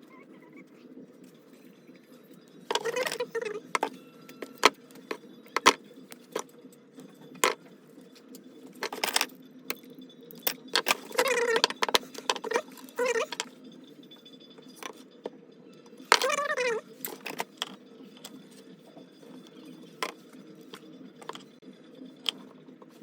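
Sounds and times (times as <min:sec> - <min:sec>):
tools clicking and tapping: 0:02.7 - 0:06.5, 0:08.8 - 0:13.5.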